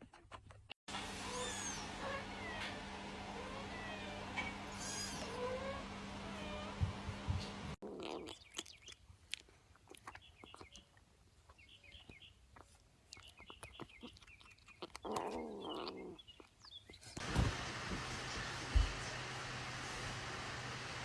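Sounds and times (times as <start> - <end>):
animal chirps: 9.9 - 10.9, 11.5 - 17.2.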